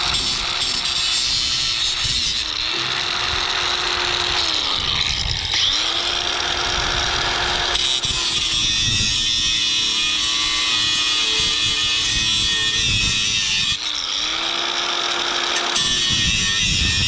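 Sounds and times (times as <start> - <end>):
power tool cutting aluminum: 0.0 - 17.0.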